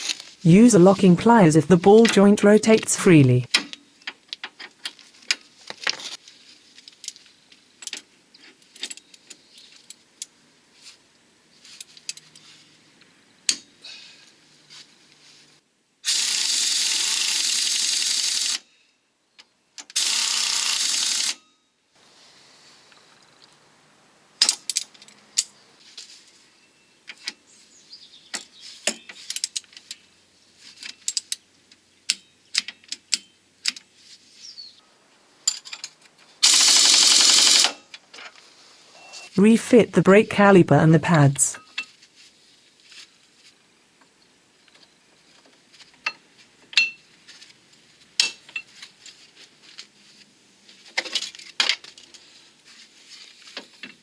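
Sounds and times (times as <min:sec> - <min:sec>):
metal tools clinking: 0:35.5 - 0:36.0.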